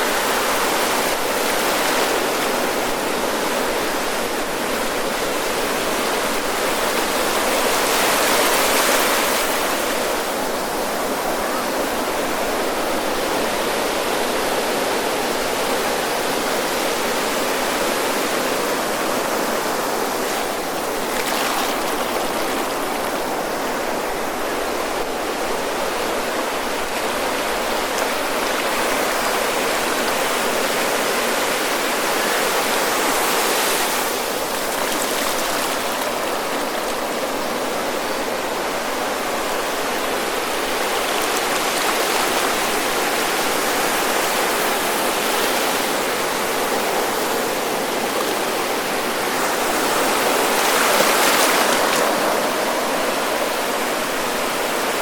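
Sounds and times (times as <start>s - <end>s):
ocean waves breaking: 17.2s - 55.0s.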